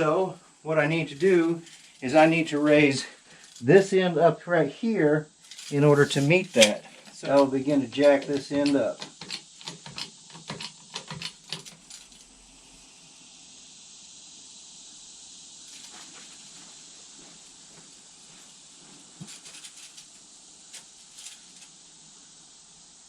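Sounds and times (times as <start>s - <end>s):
faint hiss: 0.0s - 23.0s
scattered ticks: 5.4s - 12.3s
hydraulic jack clicks: 5.5s - 12.2s.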